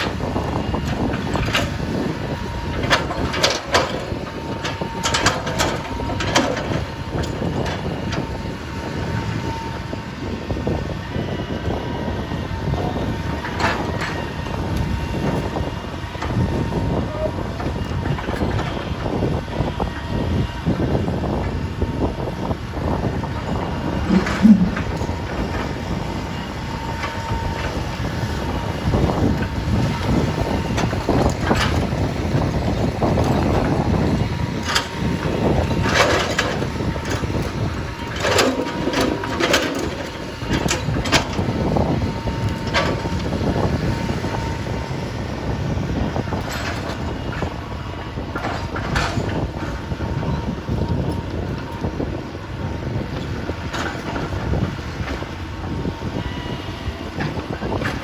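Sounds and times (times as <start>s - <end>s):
backhoe engine rumble: 0.0s - 58.0s
metal clanks and knocks: 24.0s - 25.7s.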